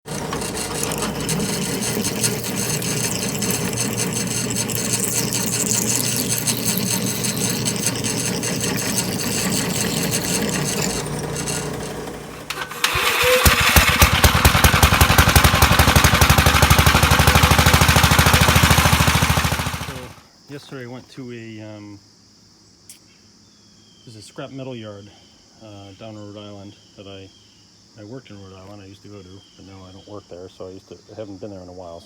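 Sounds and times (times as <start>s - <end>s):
engine starting and running: 0.0s - 20.2s
small engine running: 0.0s - 20.2s.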